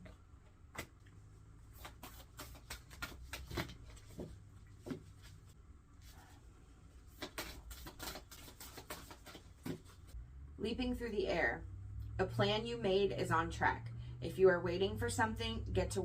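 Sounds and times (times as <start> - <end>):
low steady hum: 0.0 - 16.0
soft handling taps and rustles: 1.8 - 5.6.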